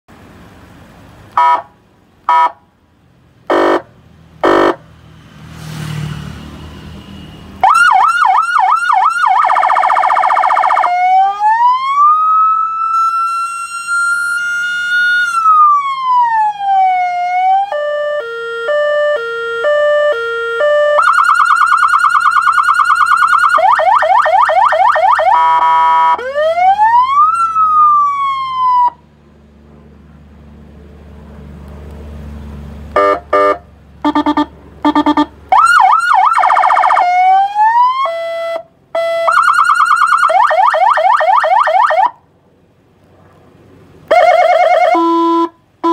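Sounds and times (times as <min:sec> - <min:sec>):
electronic siren tones: 0:07.0 - 0:29.0, 0:33.0 - 0:42.2, 0:44.1 - 0:45.9.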